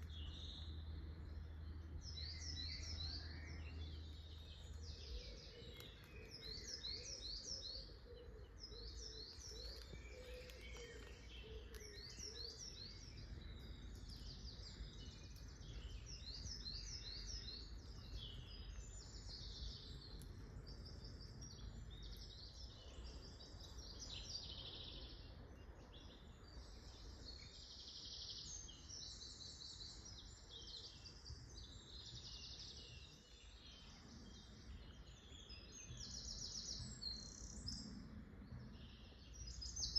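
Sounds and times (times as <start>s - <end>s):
faint low rumble: 0.0s - 26.7s
songbirds singing: 0.0s - 39.9s.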